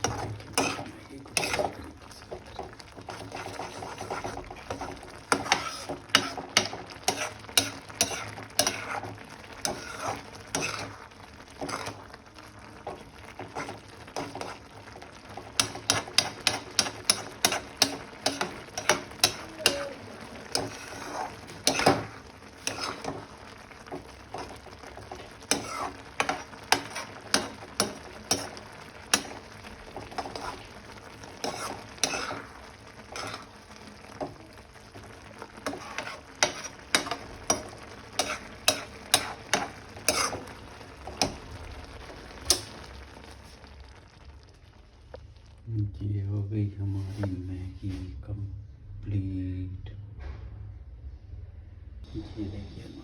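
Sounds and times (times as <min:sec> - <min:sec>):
utensil scraping a pan: 0:00.0 - 0:12.2, 0:12.8 - 0:41.4
frying sizzle: 0:00.0 - 0:48.0.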